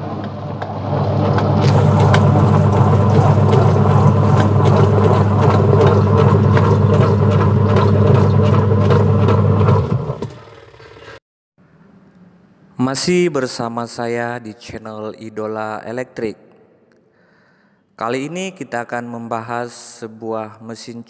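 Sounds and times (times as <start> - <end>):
washing machine running: 0.0 - 11.2.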